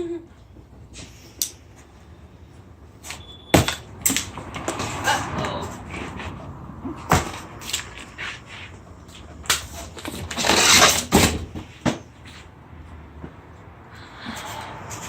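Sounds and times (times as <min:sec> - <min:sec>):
sharp knocks and clatters: 0:03.5 - 0:05.4
rough scraping rustle: 0:07.6 - 0:11.2.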